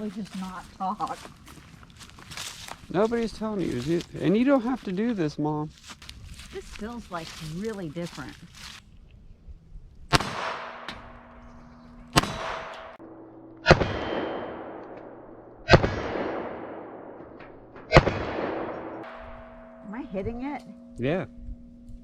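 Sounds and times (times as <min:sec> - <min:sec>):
pistol shots ringing: 0:10.1 - 0:19.8.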